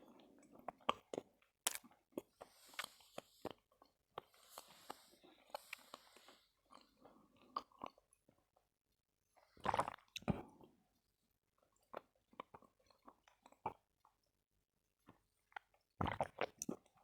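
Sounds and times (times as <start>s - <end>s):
chalk crunching while chewing: 0.9s - 6.4s.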